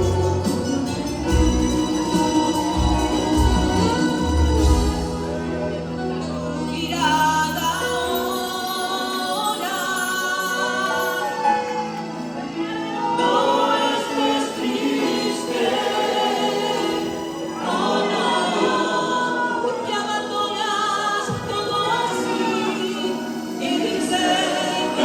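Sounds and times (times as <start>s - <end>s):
instruments accompanying: 0.0s - 9.0s
choir singing worship song: 0.0s - 25.0s.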